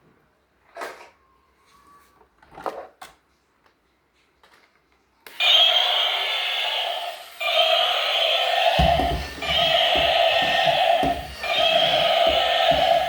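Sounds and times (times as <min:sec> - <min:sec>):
toy vehicle electronic sound effect: 0:05.3 - 0:13.0.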